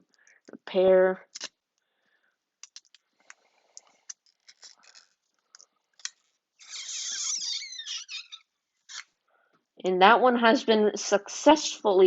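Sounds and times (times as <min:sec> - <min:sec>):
adhesive strip squeaking: 0:04.1 - 0:05.3, 0:06.0 - 0:09.2.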